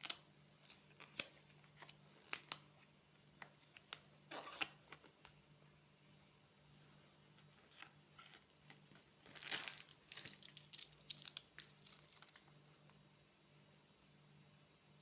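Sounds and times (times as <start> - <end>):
faint low hum: 0.0 - 15.0
plastic wrapper crinkling: 7.6 - 12.6.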